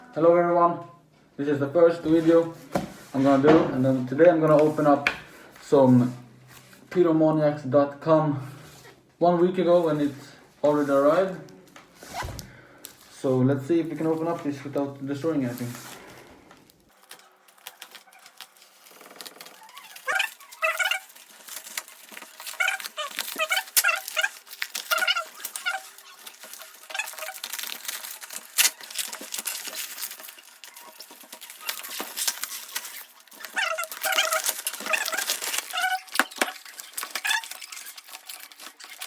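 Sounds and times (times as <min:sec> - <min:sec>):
cardboard and tape tearing: 0:14.2 - 0:39.0
short repeated squeaks: 0:17.7 - 0:39.0.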